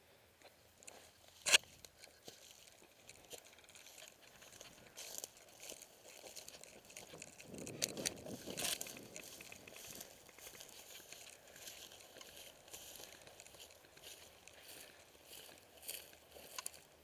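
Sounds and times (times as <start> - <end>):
rustling and crinkling: 0.4 - 17.0
small ticks: 0.4 - 17.0.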